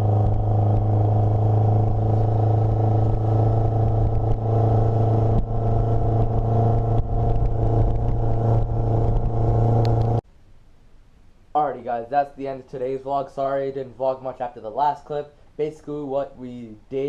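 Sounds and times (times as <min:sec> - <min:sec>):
motorboat engine running: 0:00.0 - 0:10.2.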